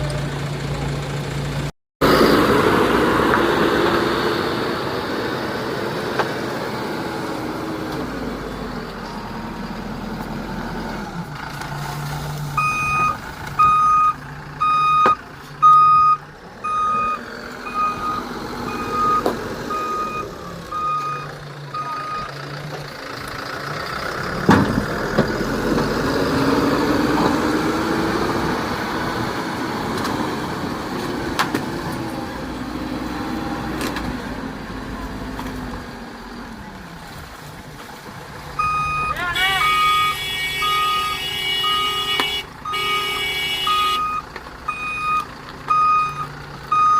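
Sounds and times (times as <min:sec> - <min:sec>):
diesel engine running: 0:00.0 - 0:46.9
reversing alarm beeps: 0:12.6 - 0:22.3, 0:38.6 - 0:42.0, 0:43.7 - 0:46.9.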